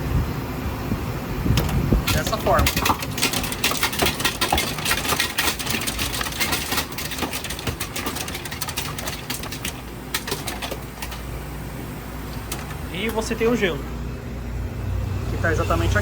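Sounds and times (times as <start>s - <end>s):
compressor humming: 0.0s - 16.0s
ice crackling and clattering: 1.6s - 11.3s, 12.3s - 12.8s.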